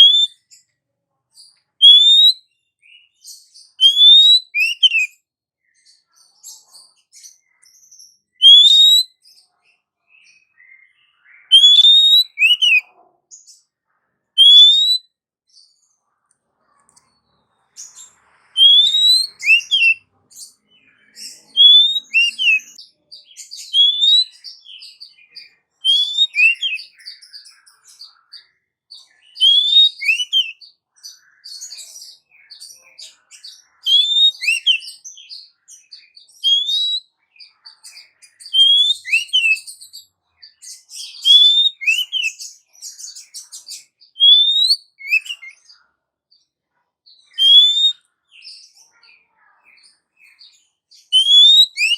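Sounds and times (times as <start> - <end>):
bird whistling call: 0.0 - 0.4, 1.8 - 2.4, 3.8 - 5.1, 8.4 - 9.1, 11.4 - 12.8, 14.4 - 15.0, 18.6 - 20.0, 21.2 - 22.8, 23.6 - 24.4, 25.9 - 27.0, 29.4 - 30.6, 33.9 - 35.0, 36.4 - 37.0, 38.4 - 39.7, 41.1 - 42.4, 44.2 - 45.6, 47.3 - 48.0, 51.1 - 51.9
bird scratchy chatter: 18.6 - 20.0, 21.2 - 22.8, 51.2 - 51.9.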